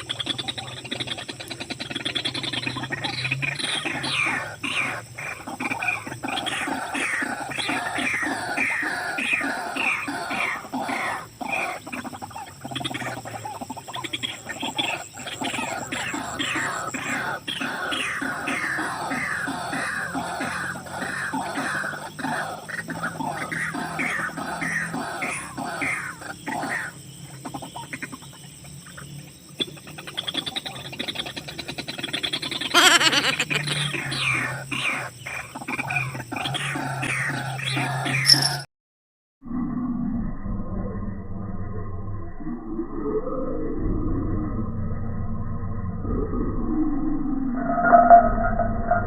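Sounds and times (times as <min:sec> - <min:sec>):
birds calling harshly: 0:00.0 - 0:27.9, 0:32.2 - 0:38.7
waterhens rattling croaks: 0:00.0 - 0:28.2, 0:32.0 - 0:38.3.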